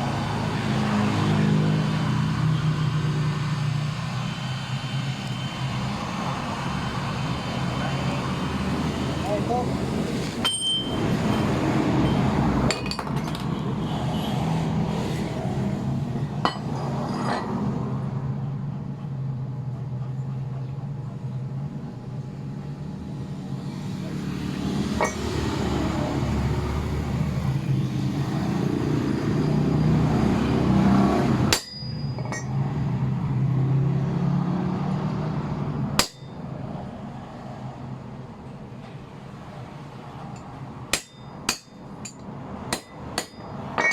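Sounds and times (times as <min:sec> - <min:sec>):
metal tool clinks: 0:10.4 - 0:11.4, 0:31.6 - 0:32.5, 0:43.3 - 0:43.9.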